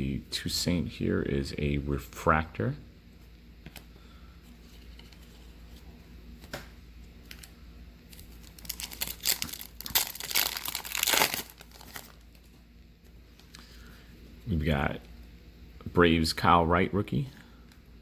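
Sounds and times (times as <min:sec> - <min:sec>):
foil wrapper tearing and crinkling: 0:08.1 - 0:12.5.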